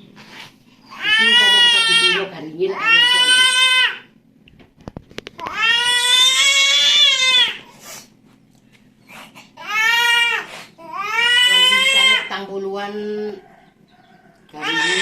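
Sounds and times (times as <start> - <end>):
infant crying: 0.9 - 4.1, 5.4 - 7.7, 9.6 - 12.5, 14.6 - 15.0.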